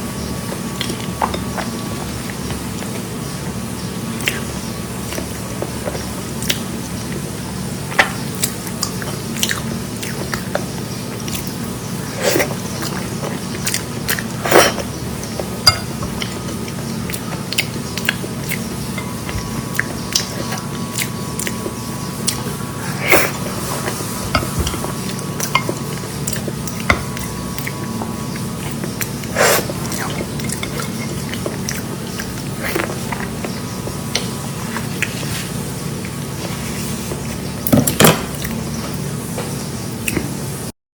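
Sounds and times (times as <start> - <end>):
low background hum: 0.0 - 40.7
person chewing and biting: 8.4 - 36.4.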